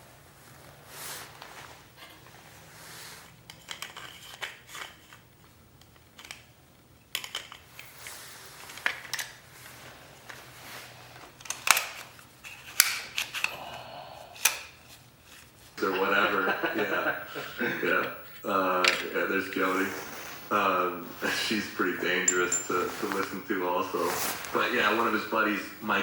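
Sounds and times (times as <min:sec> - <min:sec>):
hard objects clicking and scraping: 0:03.5 - 0:06.5, 0:19.6 - 0:23.4.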